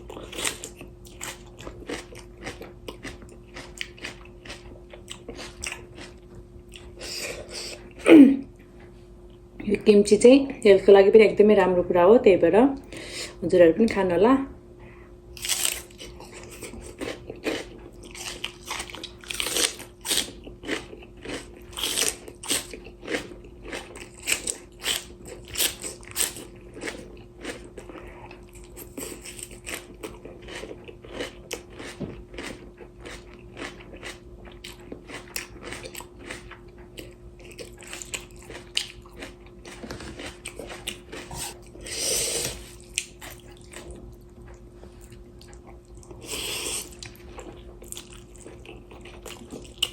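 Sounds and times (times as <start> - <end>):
crunching and chewing: 0.0 - 8.0, 15.3 - 49.9
faint steady hum: 0.0 - 49.9.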